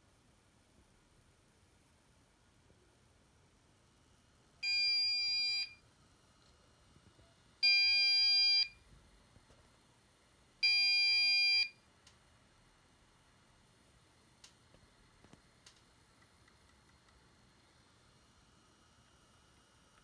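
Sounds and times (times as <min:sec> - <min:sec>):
electronic buzzer beeps: 0:04.6 - 0:05.8, 0:07.6 - 0:08.8, 0:10.6 - 0:11.8.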